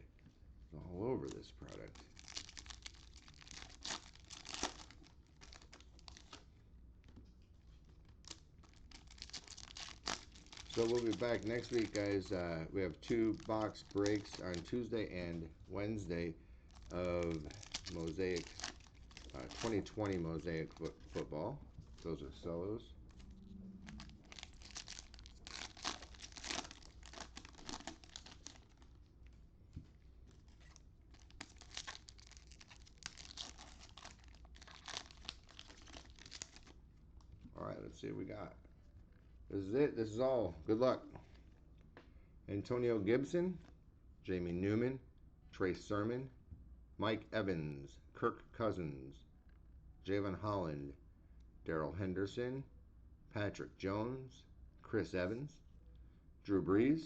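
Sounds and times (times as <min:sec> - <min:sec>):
plastic wrappers crinkling: 0:01.6 - 0:06.5, 0:07.8 - 0:15.3, 0:16.6 - 0:29.0, 0:29.8 - 0:36.8.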